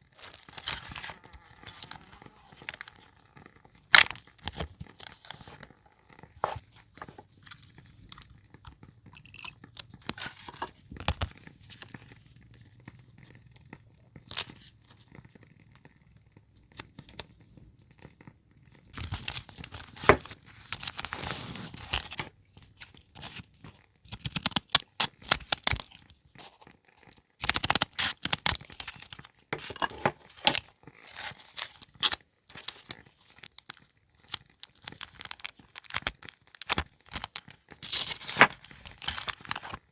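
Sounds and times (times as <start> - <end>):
paper crinkling and tearing: 0.0 - 8.2, 9.2 - 12.4, 18.9 - 39.9.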